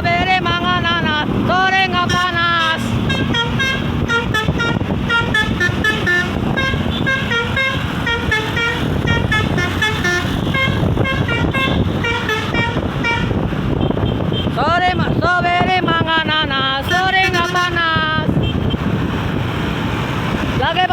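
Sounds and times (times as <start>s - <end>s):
musical bus horn playing tune: 1.9s - 14.6s, 16.8s - 18.8s.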